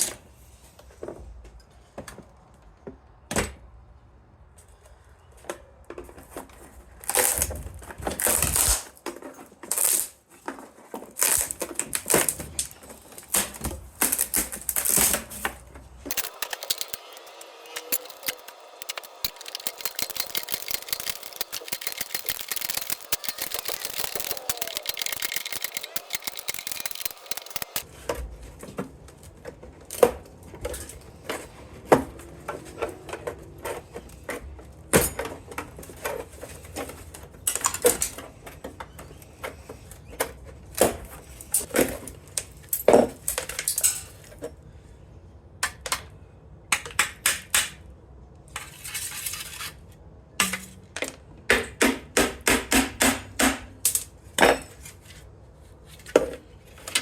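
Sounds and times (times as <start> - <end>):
metallic clinks and knocks: 16.1 - 27.8
rapid tapping: 16.1 - 27.8.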